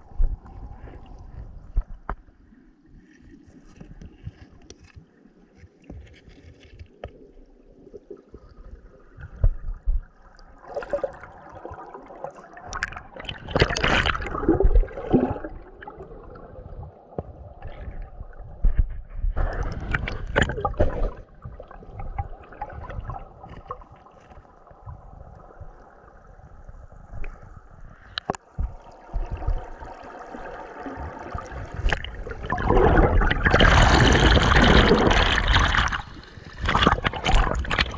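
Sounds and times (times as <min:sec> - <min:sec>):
stream water gurgling: 0:04.4 - 0:26.6, 0:28.1 - 0:37.9
rush of water: 0:28.0 - 0:37.9.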